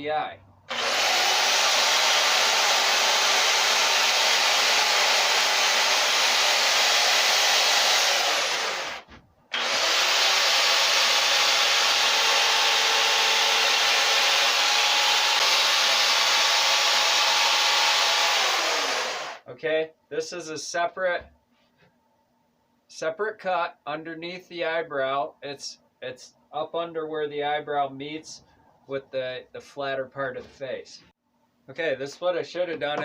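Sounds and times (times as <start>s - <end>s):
chainsaw cutting wood: 0.7s - 19.4s.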